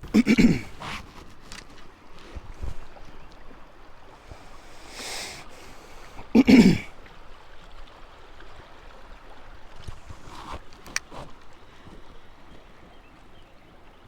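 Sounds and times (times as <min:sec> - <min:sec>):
man clearing throat: 0:00.0 - 0:00.9, 0:06.3 - 0:06.9
river water rushing: 0:00.0 - 0:13.8
soft water swish: 0:01.0 - 0:13.9.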